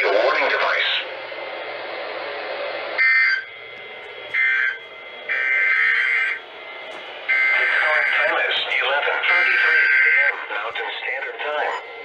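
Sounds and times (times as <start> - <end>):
radio hiss: 0.0 - 1.2, 7.0 - 12.0
harsh buzzing data bursts: 4.2 - 12.0.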